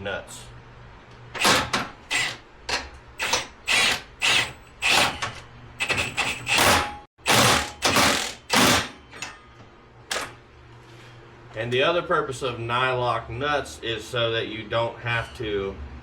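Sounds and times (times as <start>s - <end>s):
impact wrench bursts: 1.4s - 2.4s, 3.2s - 5.2s, 5.8s - 9.3s.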